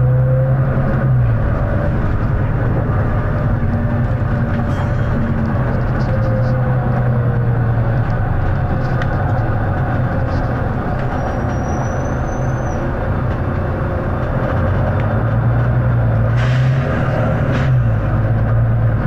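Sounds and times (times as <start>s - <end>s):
bus diesel engine drone: 0.0s - 19.0s.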